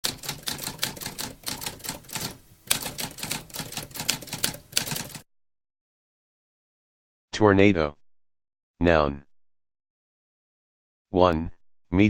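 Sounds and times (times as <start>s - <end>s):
typewriter keys clacking: 0.0s - 5.2s.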